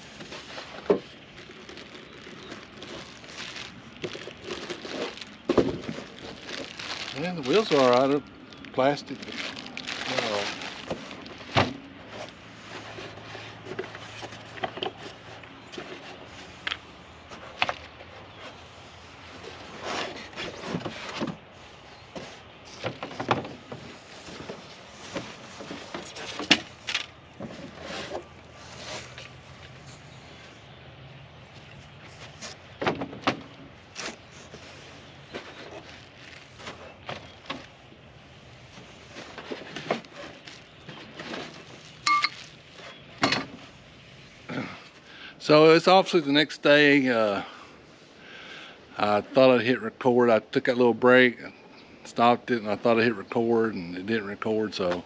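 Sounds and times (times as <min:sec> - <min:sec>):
short electronic beep: 0:42.0 - 0:42.4.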